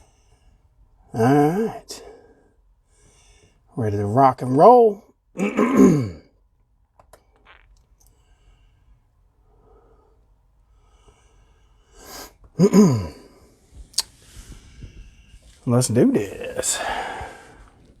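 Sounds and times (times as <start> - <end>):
breathy rush: 14.1 - 18.0
man sighing: 16.3 - 17.8.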